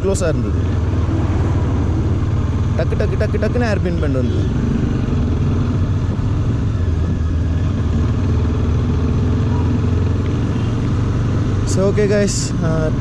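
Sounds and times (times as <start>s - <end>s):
motorcycle engine rumble: 0.0s - 13.0s.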